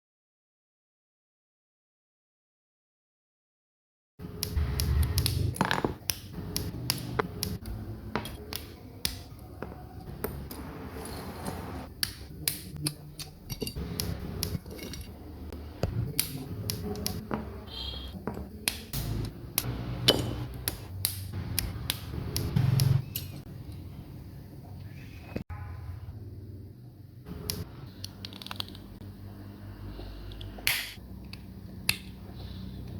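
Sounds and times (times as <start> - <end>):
plastic parts clicking and snapping: 27.5 - 28.8.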